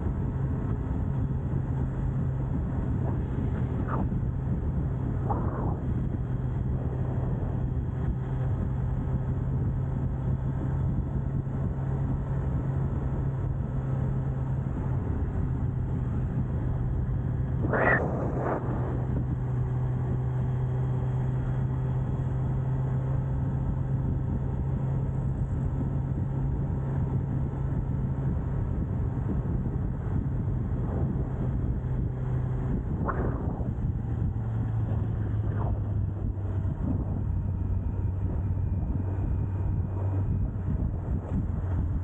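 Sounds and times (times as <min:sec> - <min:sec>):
sound sweeping up in pitch: 0:02.9 - 0:08.9, 0:17.6 - 0:19.3, 0:33.0 - 0:37.2.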